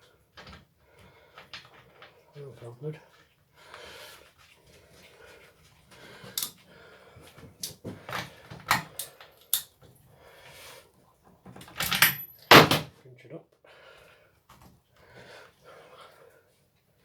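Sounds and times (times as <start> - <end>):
tools clicking and knocking: 11.6 - 12.9.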